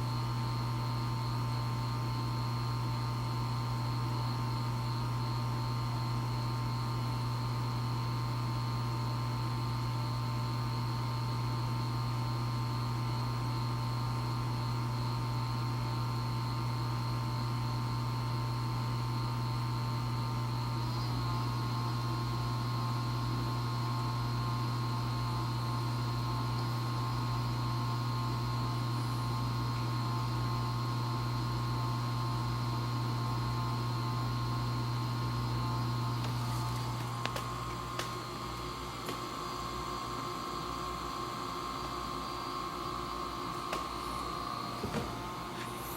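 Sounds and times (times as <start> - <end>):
propeller pump humming and whining: 18.9 - 45.9.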